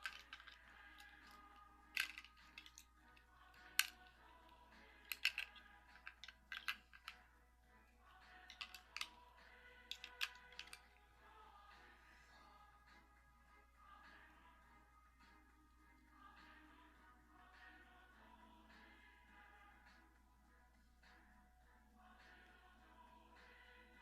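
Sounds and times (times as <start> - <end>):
plastic parts clicking: 0.0 - 4.1, 4.8 - 7.2, 8.4 - 9.2, 9.8 - 11.0.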